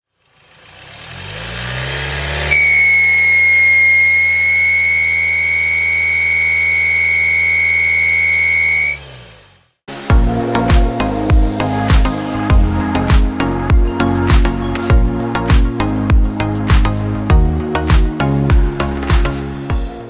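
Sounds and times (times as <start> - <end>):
turbocharged engine revving: 0.2 - 19.7
high-pitched air whistle: 2.5 - 9.0.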